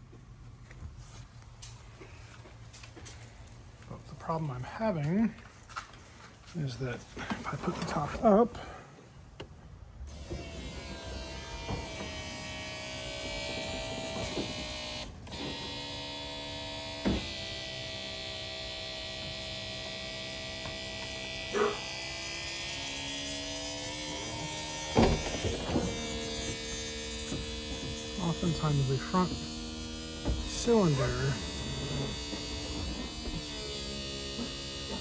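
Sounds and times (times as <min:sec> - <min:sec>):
hydraulic pump whirring: 0:08.6 - 0:35.0.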